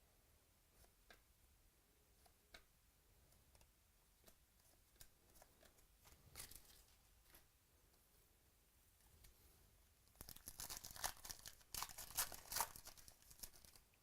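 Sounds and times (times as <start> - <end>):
trading cards being handled: 10.2 - 13.8.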